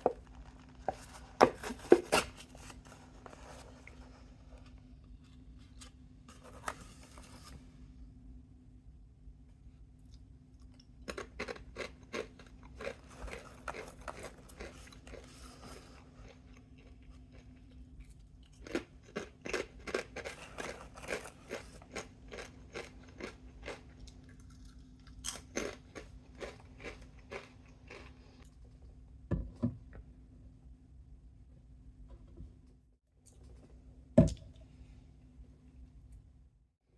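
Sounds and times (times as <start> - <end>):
person chewing crunchy snack: 10.1 - 28.5.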